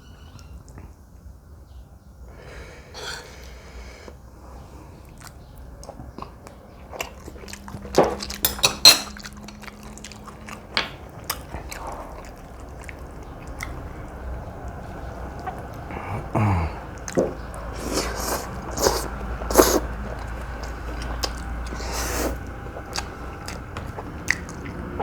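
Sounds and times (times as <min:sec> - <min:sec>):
person chewing noodles: 0:04.9 - 0:25.0
wet mouth clicks and smacks: 0:22.4 - 0:24.9.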